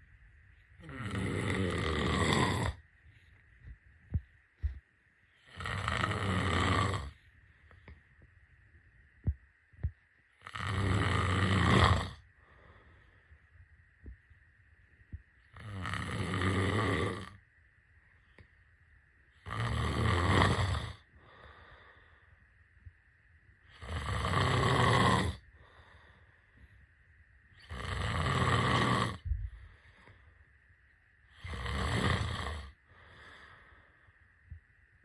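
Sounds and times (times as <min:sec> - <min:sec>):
faint high hum: 0:00.0 - 0:35.0
person snoring: 0:00.8 - 0:02.8, 0:05.4 - 0:07.2, 0:10.4 - 0:12.8, 0:15.5 - 0:17.4, 0:19.4 - 0:21.8, 0:23.7 - 0:26.1, 0:27.6 - 0:29.3, 0:31.3 - 0:33.6.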